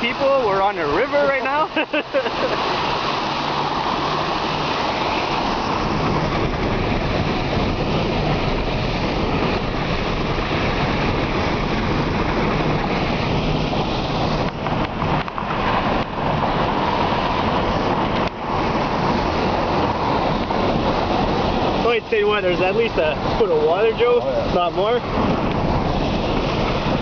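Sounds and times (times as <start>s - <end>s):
low engine hum: 0.0s - 27.0s
water spraying against truck: 0.0s - 27.0s.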